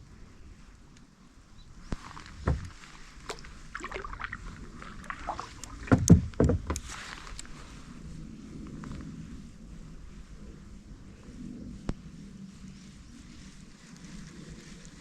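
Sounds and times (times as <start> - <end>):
water sounds: 2.4 - 6.9
loud thumps: 5.8 - 6.8
knocks on kayak: 5.9 - 6.8.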